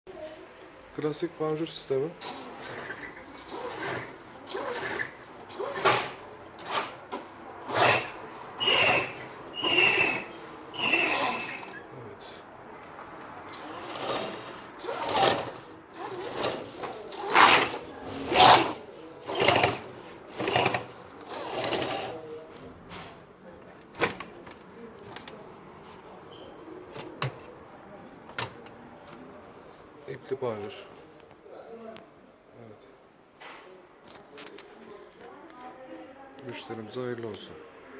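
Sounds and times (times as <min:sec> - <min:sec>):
roller shutter slats rattling: 0:02.2 - 0:11.8, 0:13.6 - 0:22.2.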